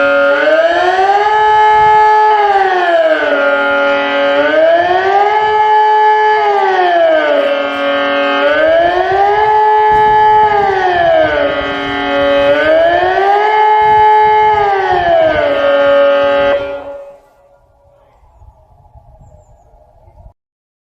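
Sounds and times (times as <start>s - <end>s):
siren wailing: 0.0s - 20.4s.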